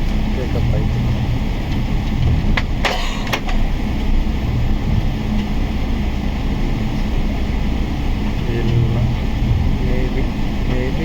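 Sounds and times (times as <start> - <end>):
jet engine cabin rumble: 0.0 - 11.0
sharp clicks or rattles: 1.7 - 4.1.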